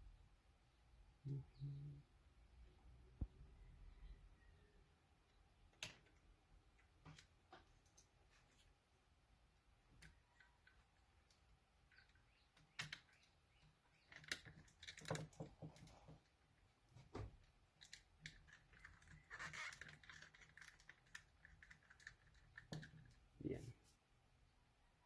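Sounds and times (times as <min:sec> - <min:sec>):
small plastic parts clicking: 0:09.9 - 0:16.4, 0:17.3 - 0:23.3.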